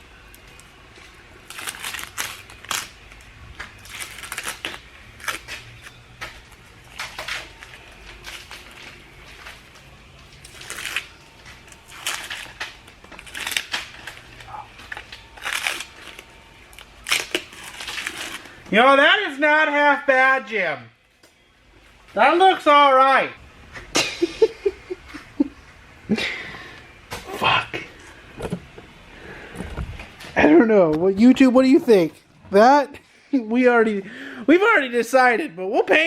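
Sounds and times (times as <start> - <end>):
tape tearing and crinkling: 0.3 - 18.7.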